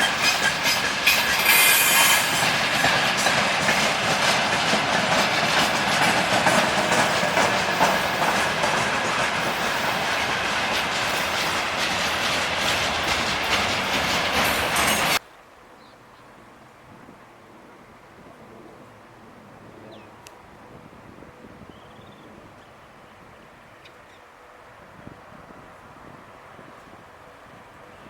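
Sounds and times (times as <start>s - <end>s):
high wheel squeal: 0.0s - 3.0s
train wheels clattering over rail joints: 0.0s - 15.2s.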